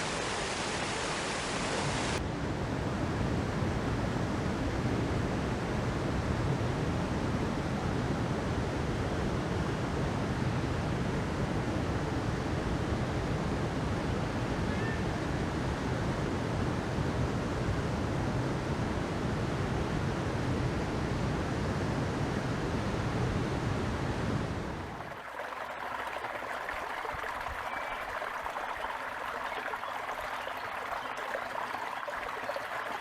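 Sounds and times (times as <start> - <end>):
flowing river water: 24.7 - 33.0.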